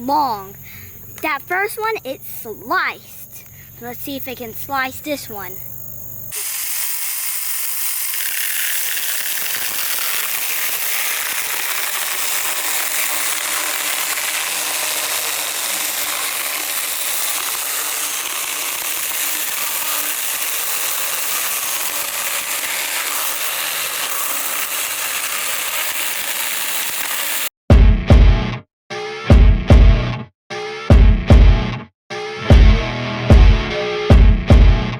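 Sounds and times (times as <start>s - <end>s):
chainsaw cutting through log: 6.3s - 27.5s.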